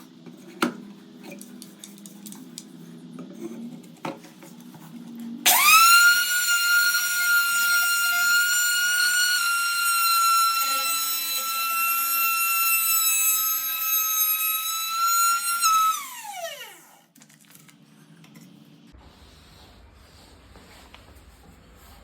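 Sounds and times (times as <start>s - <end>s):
power tool motor whining: 5.5s - 17.0s.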